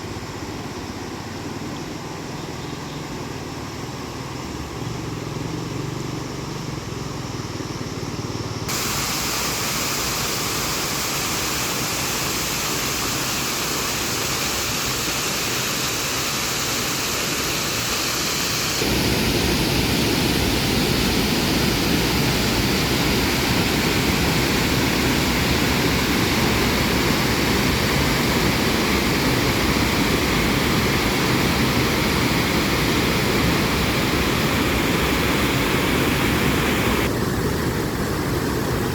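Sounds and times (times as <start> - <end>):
rushing water: 8.7 - 38.9.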